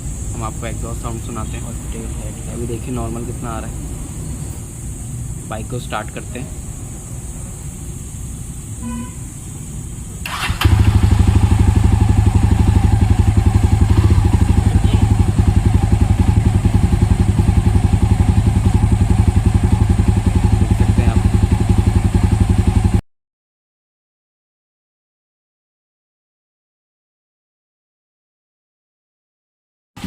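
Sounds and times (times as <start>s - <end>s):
motorcycle engine idling: 0.0s - 6.8s, 8.0s - 23.0s
electric starter: 10.2s - 15.7s.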